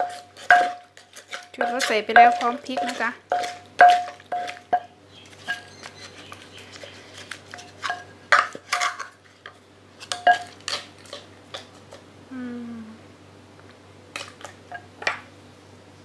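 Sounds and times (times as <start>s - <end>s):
utensils knocking in a mortar: 0.0s - 0.8s.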